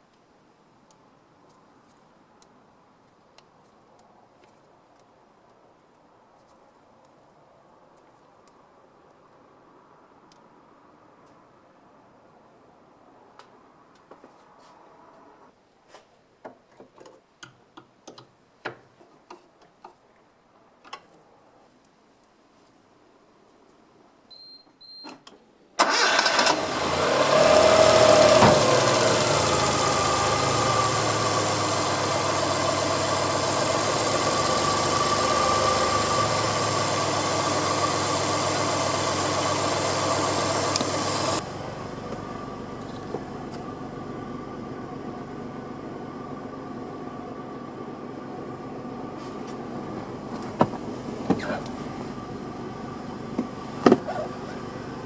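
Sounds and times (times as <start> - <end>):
short beep: 24.3 - 25.1
car engine starting and running: 25.8 - 55.0.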